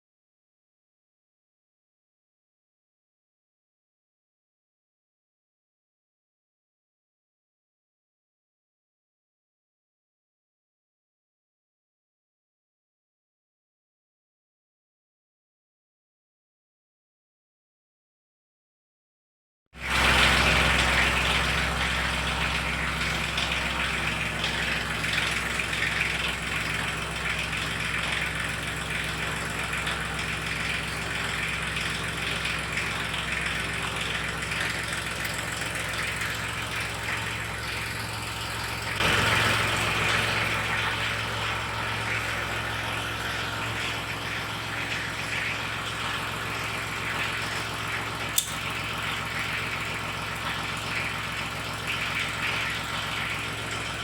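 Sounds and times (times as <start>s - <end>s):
air compressor running: 19.8s - 53.9s
short click: 48.4s - 48.6s.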